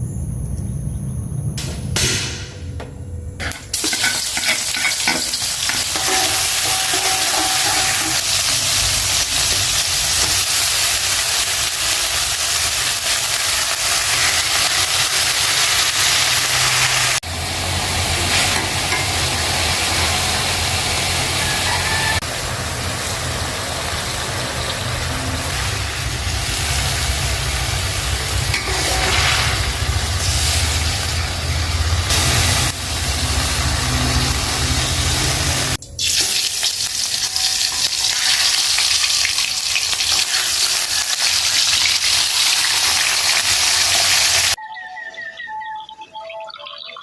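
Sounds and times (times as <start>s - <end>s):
stir-fry sizzling in a pan: 3.8s - 44.6s.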